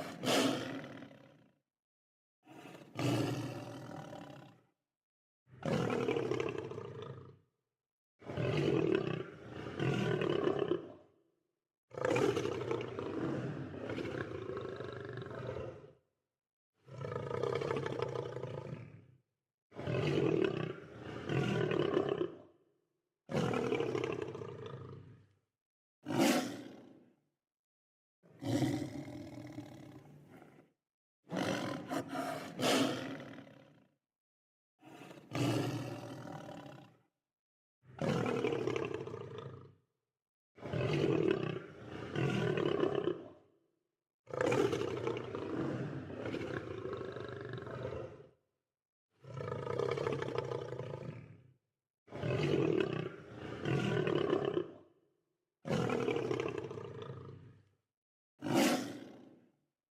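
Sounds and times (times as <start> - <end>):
lion roaring: 0.0 - 1.4, 2.5 - 4.5, 16.9 - 19.0, 26.1 - 26.8, 28.4 - 30.6, 31.3 - 33.8, 34.8 - 36.9, 44.3 - 48.3, 49.2 - 51.4, 52.2 - 54.8, 58.4 - 59.1.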